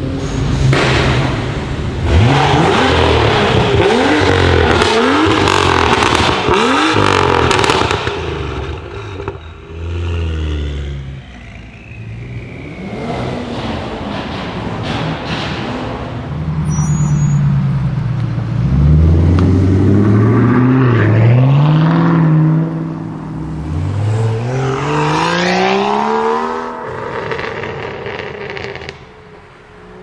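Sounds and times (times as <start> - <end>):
car engine revving: 0.0 - 30.0
exhaust crackles and pops: 3.4 - 9.6, 27.0 - 29.2.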